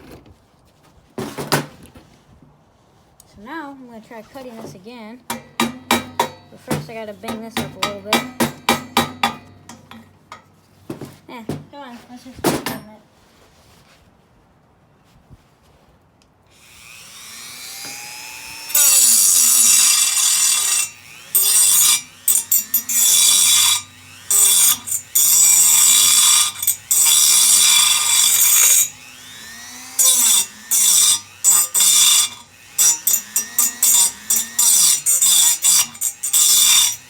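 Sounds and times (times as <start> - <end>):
power tool cutting metal: 16.6 - 37.0.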